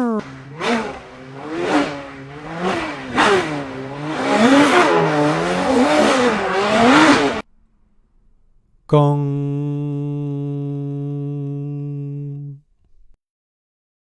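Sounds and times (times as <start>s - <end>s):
car engine revving: 0.1s - 8.8s.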